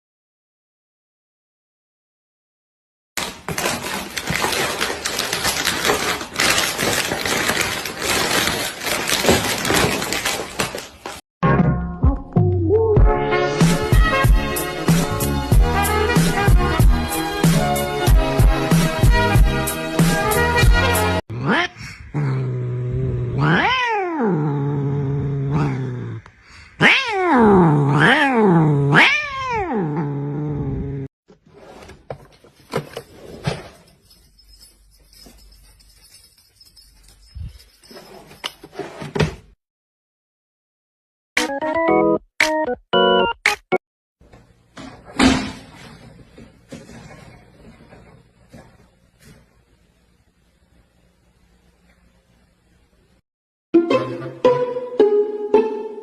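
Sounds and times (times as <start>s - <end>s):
cat yowling: 23.3s - 24.4s, 26.8s - 30.0s.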